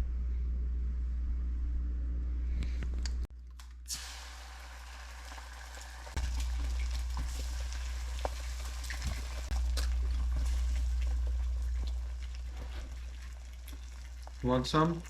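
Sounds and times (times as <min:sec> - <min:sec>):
steady low hum: 0:00.0 - 0:03.8, 0:06.1 - 0:15.0
food sizzling in a frying pan: 0:03.9 - 0:15.0.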